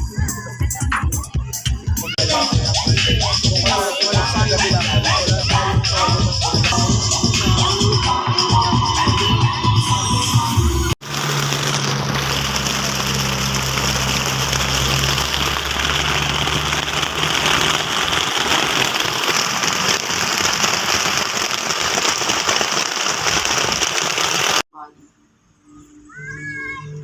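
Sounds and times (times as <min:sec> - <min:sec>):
rain hissing: 0:11.0 - 0:24.7.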